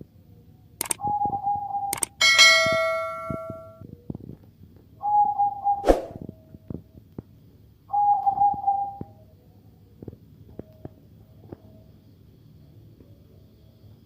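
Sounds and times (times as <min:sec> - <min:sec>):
dove calling: 0:00.8 - 0:03.7, 0:07.9 - 0:09.2
metallic clang: 0:02.2 - 0:03.8.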